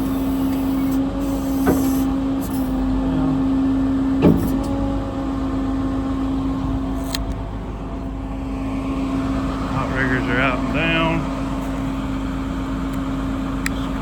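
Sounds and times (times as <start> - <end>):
hydraulic outriggers lowering: 0.0 - 5.5
diesel engine drone: 0.0 - 14.0.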